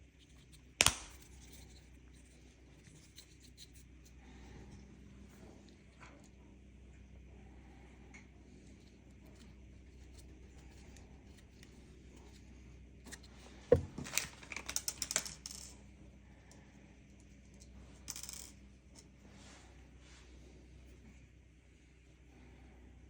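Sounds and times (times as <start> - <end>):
small parts clicking and rattling: 0.2 - 3.9, 13.2 - 15.8
knock on tabletop: 13.7 - 14.0.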